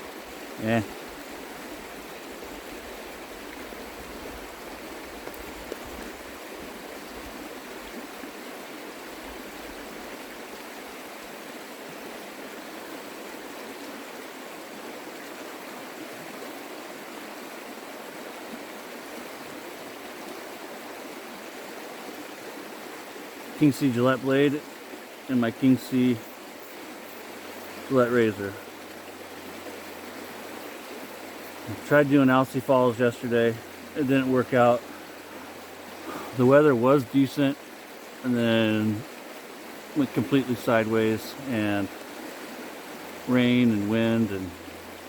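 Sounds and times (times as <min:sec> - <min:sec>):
creek water rushing: 0:00.0 - 0:45.0
faint ticks: 0:05.2 - 0:06.2.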